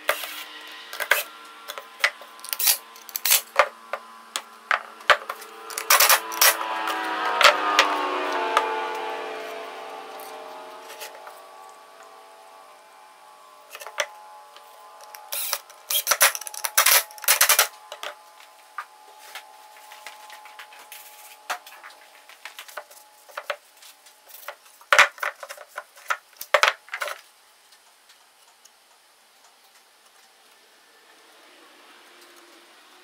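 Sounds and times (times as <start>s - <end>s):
small parts and tools clicking: 0.1s - 8.0s, 13.7s - 18.2s.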